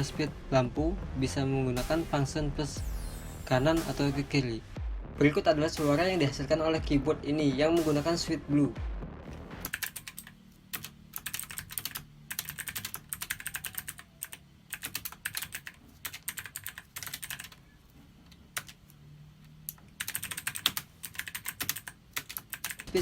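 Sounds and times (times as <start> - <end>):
clicky mechanical keyboard typing: 9.7 - 17.6, 18.3 - 18.8, 19.6 - 23.0.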